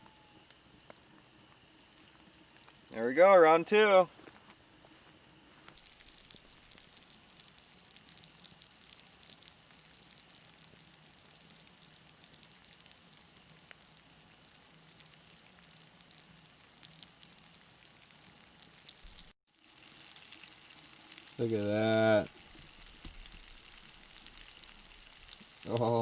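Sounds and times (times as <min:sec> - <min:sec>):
fish frying with crackles: 0:00.4 - 0:03.0, 0:03.8 - 0:26.0.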